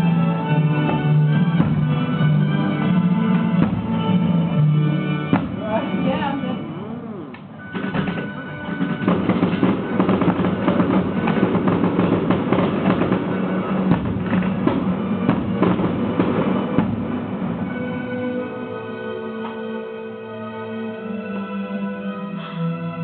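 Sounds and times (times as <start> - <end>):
music with busy drum beat: 0.9 - 4.5, 5.2 - 6.7, 7.5 - 18.0.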